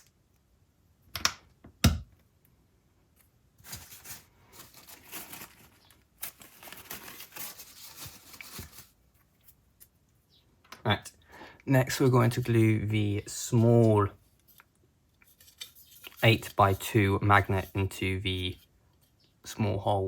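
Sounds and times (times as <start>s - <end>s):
rustling of small parts: 3.0s - 10.1s, 13.5s - 16.5s.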